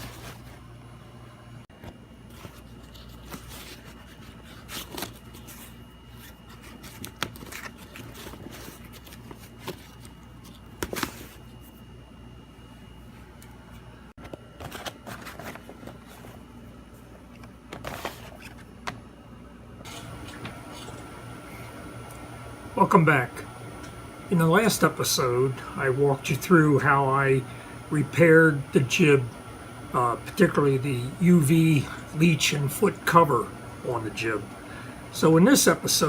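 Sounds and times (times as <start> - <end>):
handling scraping and rustling: 0.0 - 0.7, 1.8 - 11.9, 13.0 - 19.0, 19.8 - 21.7.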